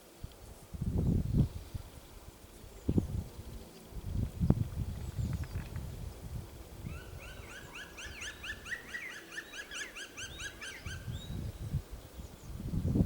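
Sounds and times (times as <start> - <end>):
low wind rumble: 0.6 - 8.8, 10.3 - 13.0
woodpecker calling: 6.9 - 11.2.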